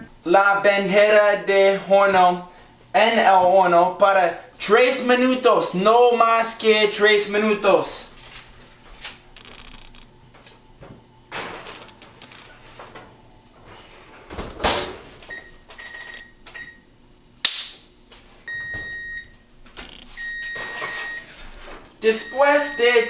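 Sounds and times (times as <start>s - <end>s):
oven control panel beeps: 15.3s - 16.8s, 18.5s - 19.4s, 20.1s - 21.3s, 22.0s - 23.0s.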